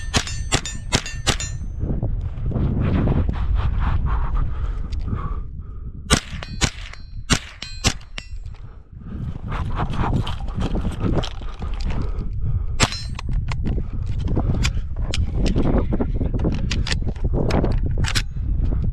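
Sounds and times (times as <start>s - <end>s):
rifle single shots: 6.1s - 8.2s.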